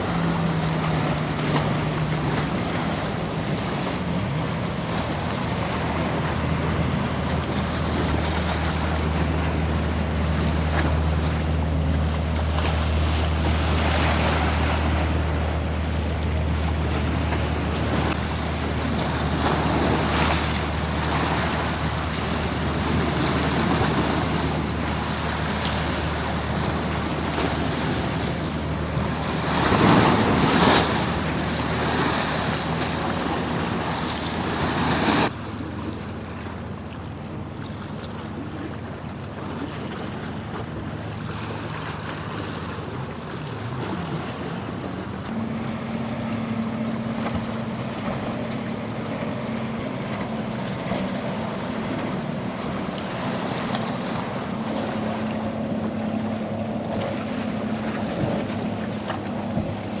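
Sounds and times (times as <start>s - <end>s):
boat engine: 0.0s - 60.0s
low engine hum: 0.0s - 60.0s
waves washing: 0.0s - 60.0s.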